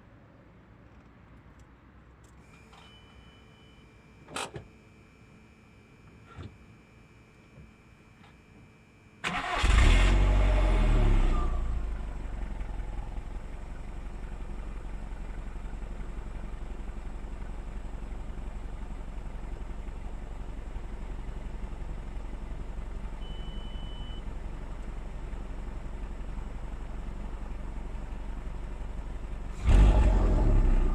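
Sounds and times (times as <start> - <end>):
car engine starting and idling: 9.2 - 30.9.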